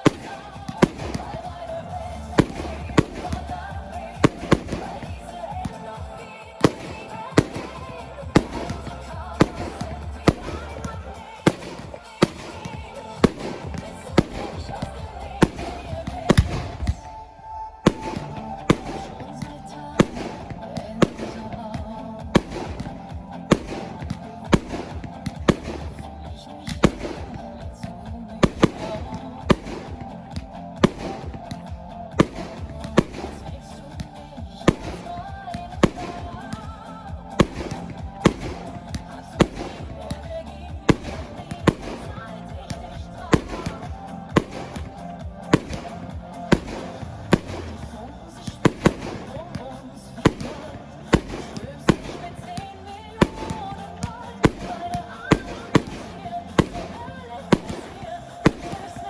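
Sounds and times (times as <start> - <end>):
fireworks bursting: 0.0 - 59.0
pop song playing: 0.0 - 59.0.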